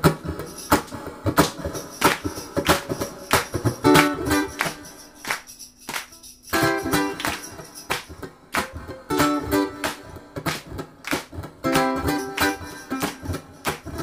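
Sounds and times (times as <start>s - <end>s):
ukulele strumming: 0.0s - 14.0s
audience clapping along: 1.4s - 6.2s, 7.2s - 8.9s, 9.8s - 14.0s.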